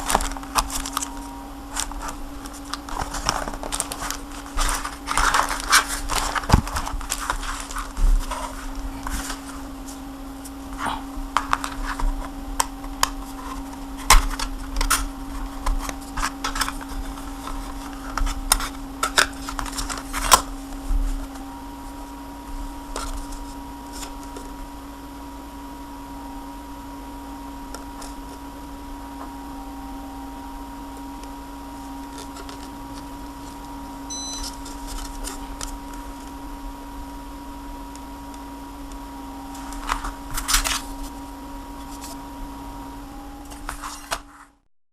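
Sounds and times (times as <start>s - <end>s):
steady low hum: 0.0s - 44.7s
faint high tone: 28.6s - 33.2s, 33.8s - 34.6s, 38.8s - 44.2s.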